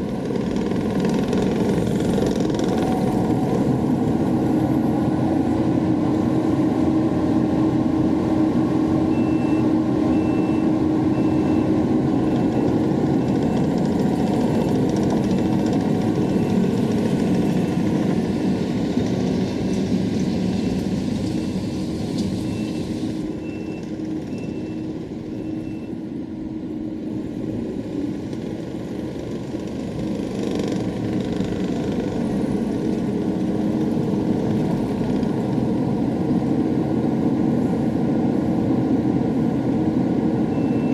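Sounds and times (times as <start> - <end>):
heavy equipment engine running: 0.0 - 40.9
reversing alarm beeping: 9.1 - 13.7, 22.4 - 26.0, 40.5 - 40.9.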